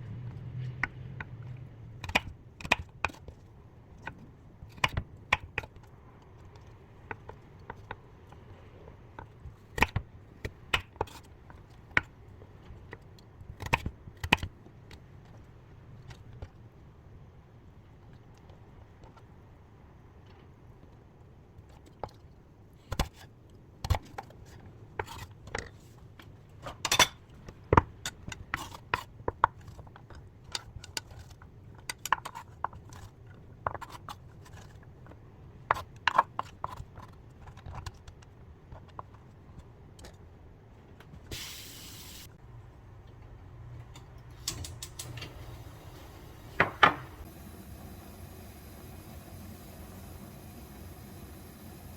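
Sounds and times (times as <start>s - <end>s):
brief hiss: 41.3s - 42.3s.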